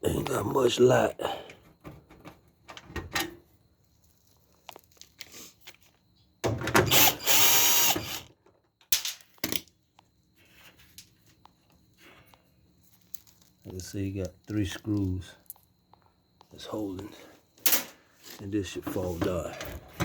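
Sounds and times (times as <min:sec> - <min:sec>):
cordless drill motor running: 0:06.8 - 0:08.3.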